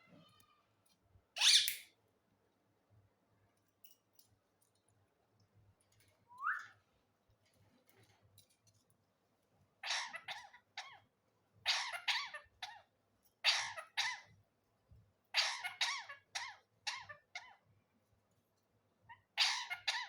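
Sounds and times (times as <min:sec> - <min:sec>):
parrot harsh call: 0:01.4 - 0:01.8
parrot whistled squeak: 0:01.4 - 0:01.8, 0:06.4 - 0:06.7.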